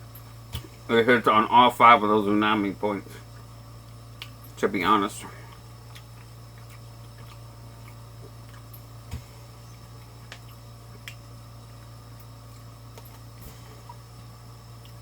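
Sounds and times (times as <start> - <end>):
low steady hum: 0.0 - 15.0
person chewing: 5.4 - 15.0.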